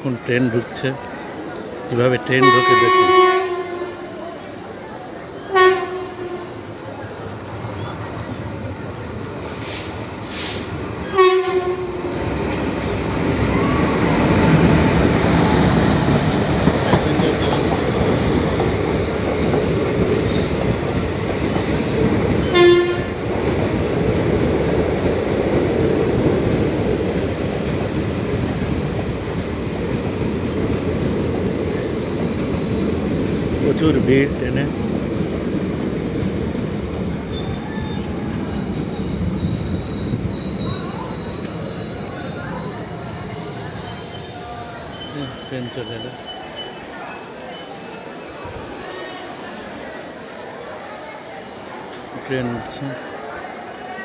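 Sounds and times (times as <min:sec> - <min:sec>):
train horn blasts: 0:02.4 - 0:04.1, 0:05.4 - 0:06.6, 0:11.1 - 0:12.1, 0:22.4 - 0:23.2
train wheels rumbling and clattering: 0:05.0 - 0:48.8.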